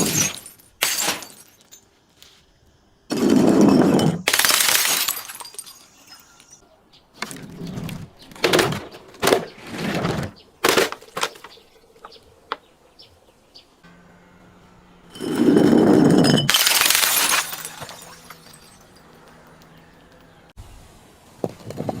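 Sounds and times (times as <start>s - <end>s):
glass shards tinkling: 0.0s - 1.9s, 4.0s - 6.6s, 15.1s - 20.5s
glass shattering: 0.0s - 1.9s, 3.1s - 6.6s, 15.1s - 20.4s
glass crunching: 0.0s - 2.0s, 3.1s - 6.6s, 15.1s - 20.2s.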